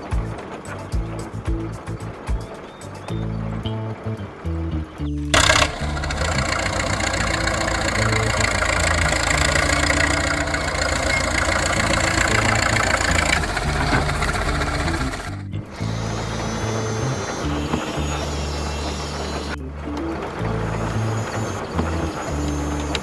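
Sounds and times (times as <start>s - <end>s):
music with stepping bass line: 0.0s - 9.7s, 11.1s - 23.0s
loud even noise: 5.4s - 19.6s.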